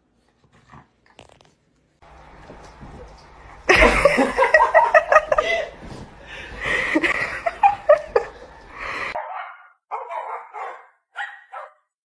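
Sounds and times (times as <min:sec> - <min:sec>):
dog barking and yipping: 0:09.2 - 0:11.9.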